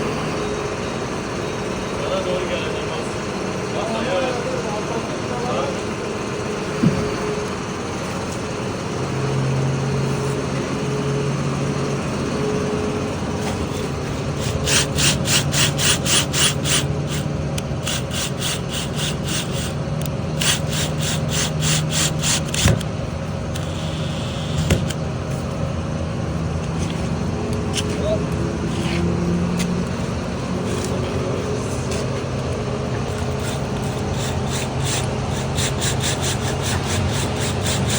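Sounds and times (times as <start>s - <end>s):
low mechanical hum: 0.0s - 37.9s
hand tool scraping: 13.4s - 19.8s, 20.4s - 22.8s, 28.7s - 29.7s, 33.0s - 37.9s.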